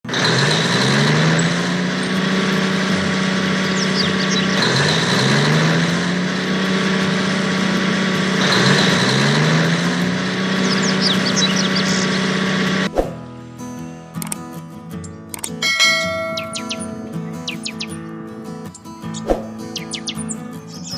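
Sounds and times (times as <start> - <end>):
engine revving: 0.0 - 13.2, 15.6 - 18.0
faint high chirps: 16.0 - 18.0.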